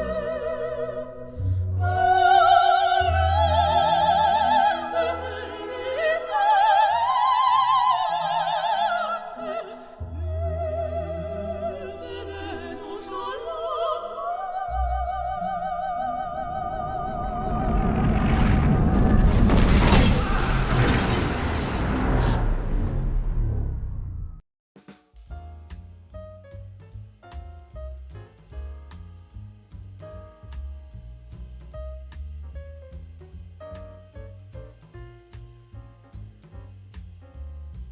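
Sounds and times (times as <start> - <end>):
operatic singing: 0.0 - 23.0
loud rushing noise: 16.3 - 24.0.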